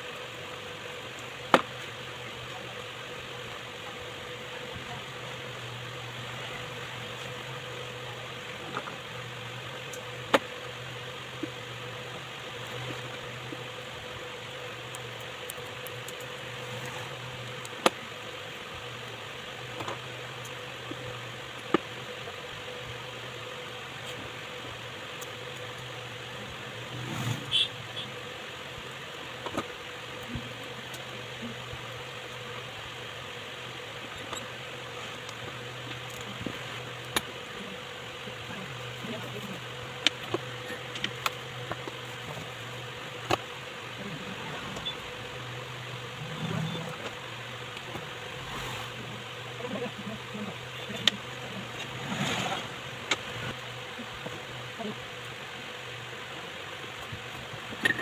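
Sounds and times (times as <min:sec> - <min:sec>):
electric motor humming: 0:00.0 - 0:58.0.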